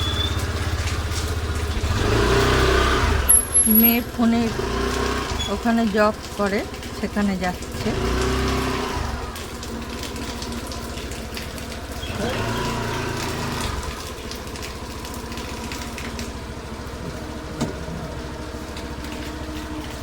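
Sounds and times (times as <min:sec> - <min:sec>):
motor humming: 0:12.0 - 0:20.0.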